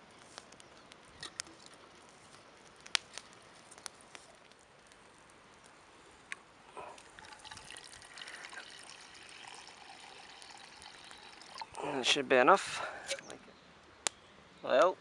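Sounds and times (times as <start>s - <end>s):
water being poured: 6.8s - 11.8s.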